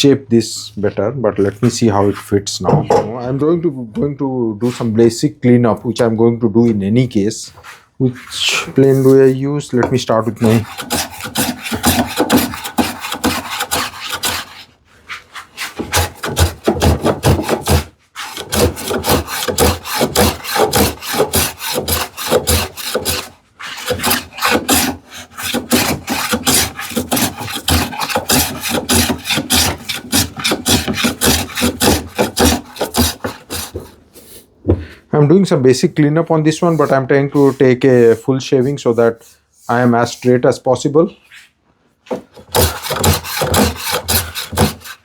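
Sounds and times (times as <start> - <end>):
hand plane shaving wood: 7.6 - 34.3, 36.6 - 40.4, 42.1 - 45.0.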